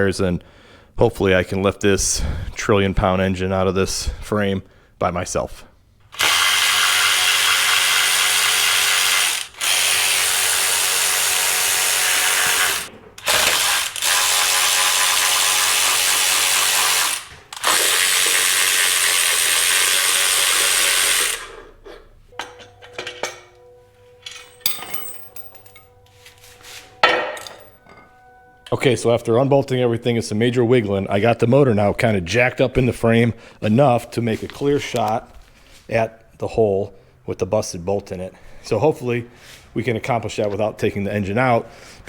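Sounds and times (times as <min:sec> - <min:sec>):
power tool running: 0:06.1 - 0:21.6
metal tools clinking: 0:22.3 - 0:28.9.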